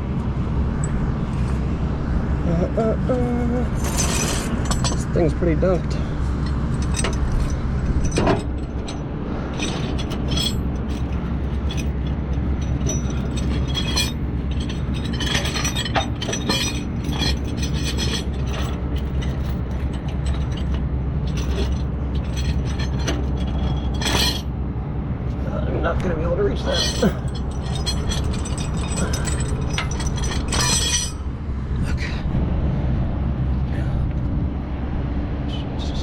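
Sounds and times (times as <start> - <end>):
metal chains clinking and scraping: 3.8 - 24.6, 26.5 - 31.3.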